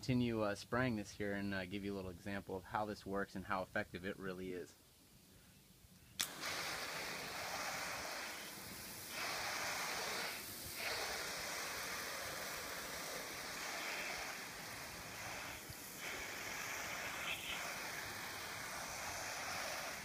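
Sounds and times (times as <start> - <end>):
sprayer hissing: 6.2 - 20.0.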